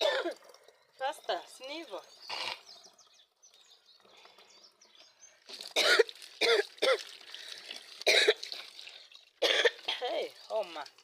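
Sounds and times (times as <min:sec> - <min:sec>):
person coughing: 0:00.0 - 0:00.4, 0:05.8 - 0:07.0, 0:08.0 - 0:08.5, 0:09.4 - 0:10.0.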